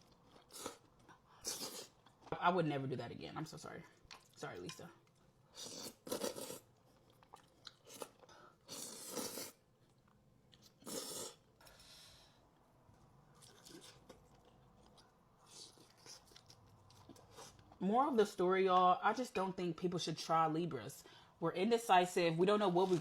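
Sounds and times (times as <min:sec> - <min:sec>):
crunching and chewing food: 0:05.0 - 0:11.8, 0:12.5 - 0:17.8.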